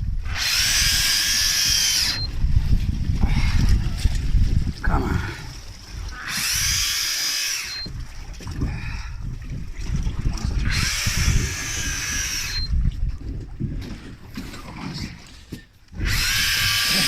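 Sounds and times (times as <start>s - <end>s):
fishing reel whirring: 0.0s - 2.6s, 6.1s - 8.1s, 10.5s - 13.0s, 15.9s - 17.0s
boat low rumble: 0.0s - 17.0s.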